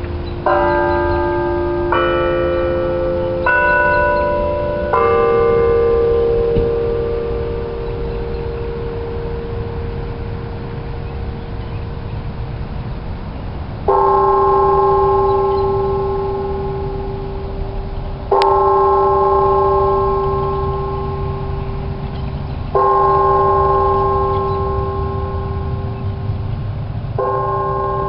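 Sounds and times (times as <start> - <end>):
church bell tolling: 0.0 - 28.0
low background rumble: 5.6 - 28.0.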